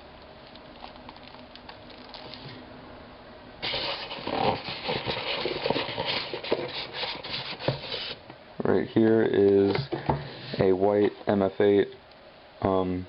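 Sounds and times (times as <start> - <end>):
plastic packaging rustling: 3.6 - 8.2.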